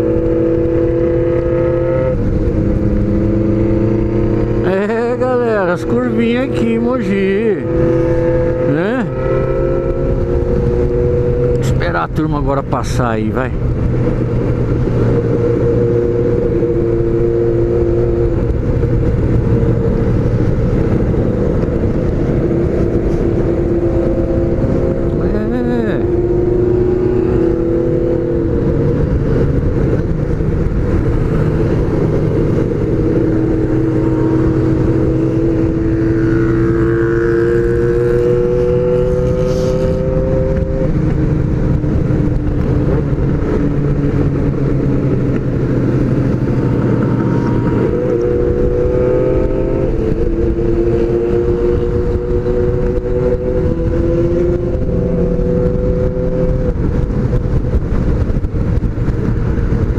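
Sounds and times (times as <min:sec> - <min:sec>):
motorcycle engine at road speed: 0:00.0 - 0:59.9
wind rumble on microphone: 0:00.0 - 0:59.9.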